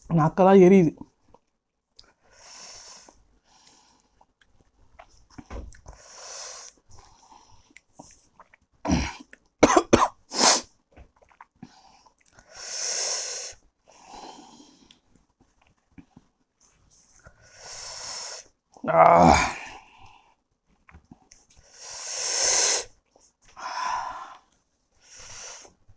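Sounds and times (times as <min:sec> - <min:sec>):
hissing breaths through mouth: 0:05.9 - 0:08.2, 0:12.4 - 0:14.8, 0:17.2 - 0:18.6, 0:21.6 - 0:23.0, 0:23.6 - 0:25.9
man coughing: 0:08.9 - 0:10.1.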